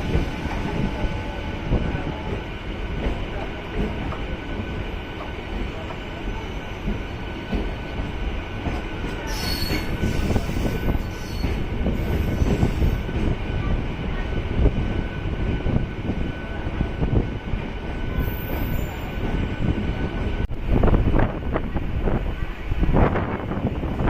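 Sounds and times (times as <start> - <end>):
train wheels rumbling on rails: 0.0 - 24.0
high-pitched wheel squeal: 9.3 - 12.8.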